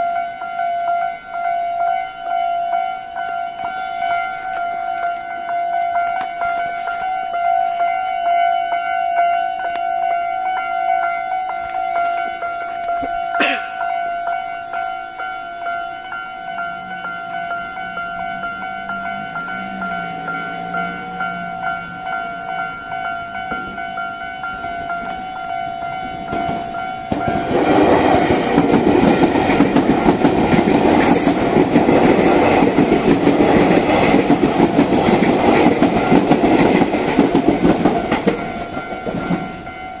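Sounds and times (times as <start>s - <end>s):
level crossing bell ringing: 0.0s - 40.0s
train wheels clattering: 16.7s - 40.0s.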